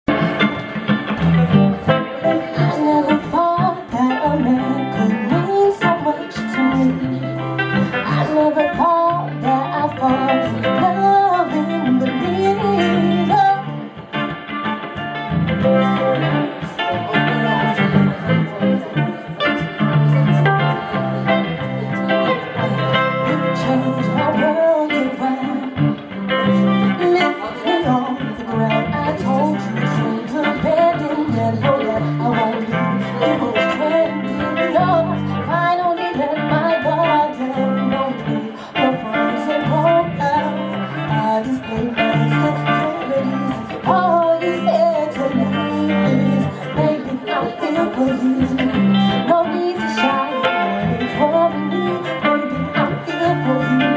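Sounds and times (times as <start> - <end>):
steady bass line: 0.0 - 50.0, 50.6 - 53.9
guitar: 0.0 - 53.9
woman singing: 0.1 - 15.0, 15.6 - 53.9.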